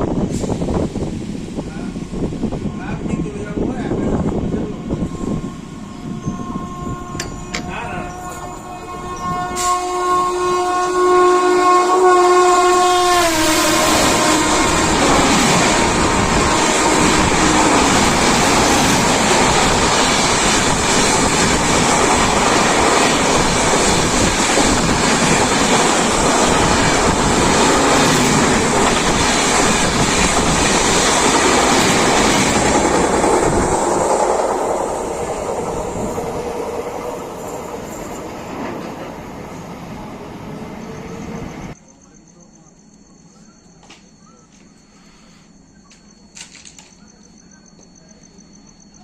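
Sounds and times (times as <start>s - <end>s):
train passing with wheels clattering: 3.2s - 10.2s, 13.3s - 41.8s
train horn: 4.6s - 19.0s, 21.1s - 29.0s.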